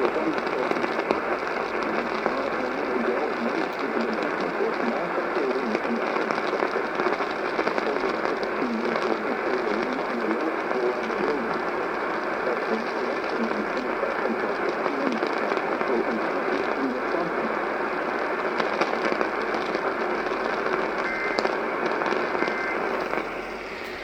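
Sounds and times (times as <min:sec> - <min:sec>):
faint voice: 0:00.0 - 0:06.4, 0:07.7 - 0:17.8
radio static and crackle: 0:00.0 - 0:24.0
high data tones: 0:19.1 - 0:24.0.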